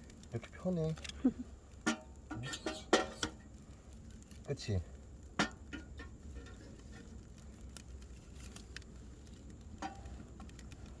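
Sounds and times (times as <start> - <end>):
campfire crackling: 0.0 - 11.0
sharp pops: 1.1 - 4.4.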